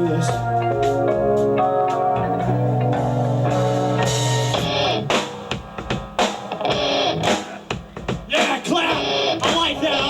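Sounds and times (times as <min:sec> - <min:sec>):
guitar chord ringing: 0:00.1 - 0:05.3.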